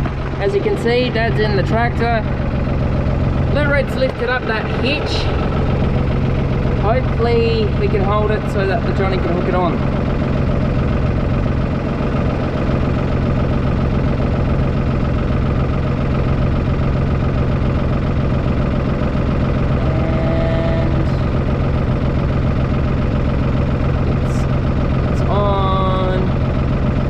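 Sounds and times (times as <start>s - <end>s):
steady tone: 0.0s - 14.4s
tractor engine idling: 0.0s - 27.0s.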